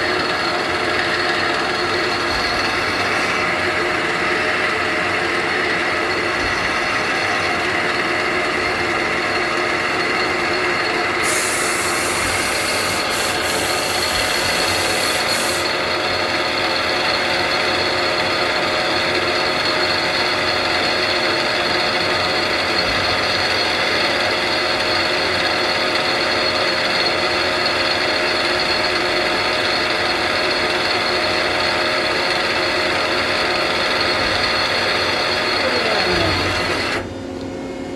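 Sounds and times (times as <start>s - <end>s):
cutting and mechanism noise: 0.0s - 24.2s, 29.0s - 37.1s
lathe machine whine: 0.0s - 37.9s
high hiss: 11.2s - 15.6s.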